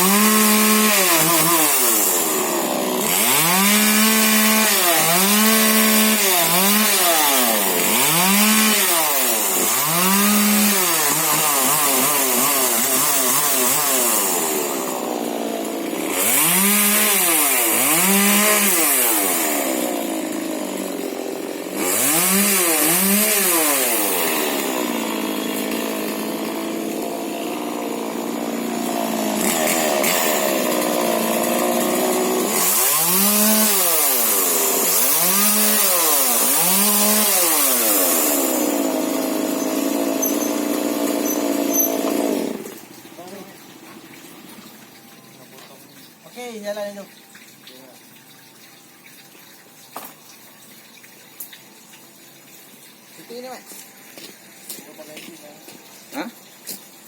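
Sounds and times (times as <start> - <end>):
chainsaw revving: 0.0 - 43.5.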